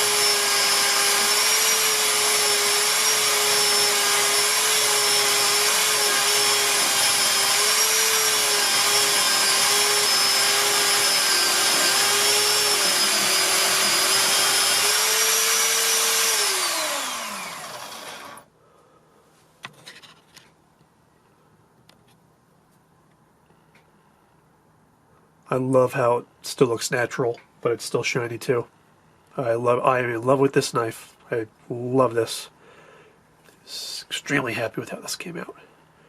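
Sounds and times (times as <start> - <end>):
electric polisher motor whine: 0.0 - 18.4.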